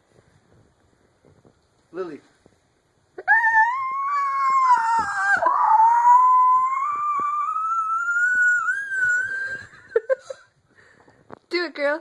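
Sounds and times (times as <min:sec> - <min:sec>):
dog howling: 0:03.2 - 0:09.7.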